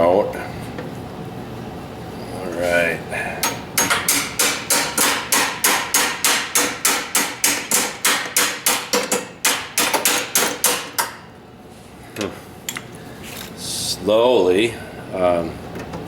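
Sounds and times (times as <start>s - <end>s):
hammer striking metal pin: 3.4s - 11.2s.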